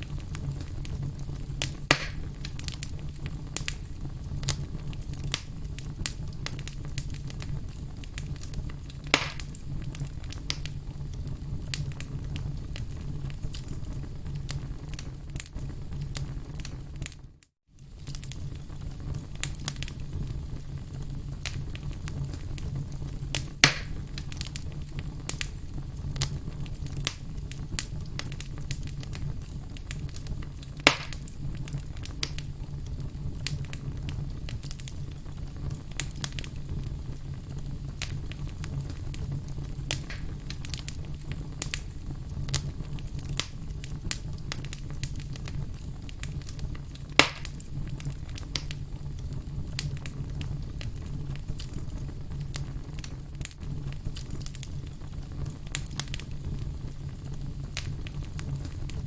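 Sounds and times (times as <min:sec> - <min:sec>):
fire rushing and crackling: 0:00.0 - 0:59.0
sharp wood pops: 0:01.9 - 0:02.2, 0:09.1 - 0:09.5, 0:23.6 - 0:23.9, 0:30.9 - 0:31.2, 0:47.2 - 0:47.5.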